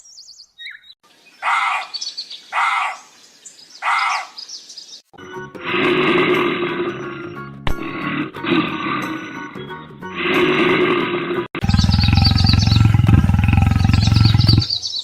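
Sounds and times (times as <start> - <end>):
animal growling: 5.6 - 9.3, 10.2 - 14.8
high twittering: 11.6 - 14.8.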